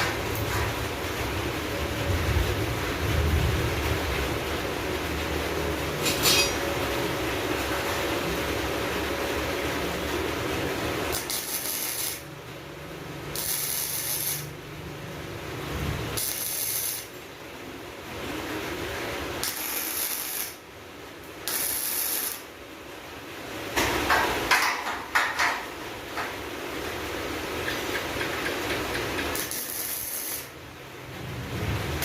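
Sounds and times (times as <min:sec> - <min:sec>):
metal ratcheting strokes: 0:11.1 - 0:12.2, 0:13.3 - 0:14.5, 0:16.2 - 0:17.1, 0:19.4 - 0:20.6, 0:21.4 - 0:22.4, 0:27.6 - 0:30.5
clatter of metal knocks: 0:23.8 - 0:26.4.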